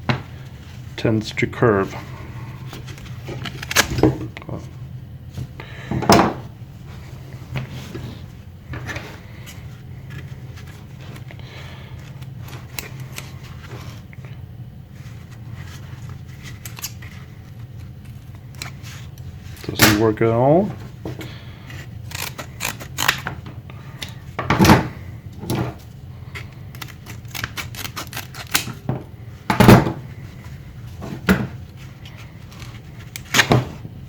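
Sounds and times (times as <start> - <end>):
shears clicking and rubbing: 22.0 - 23.4, 26.4 - 28.8.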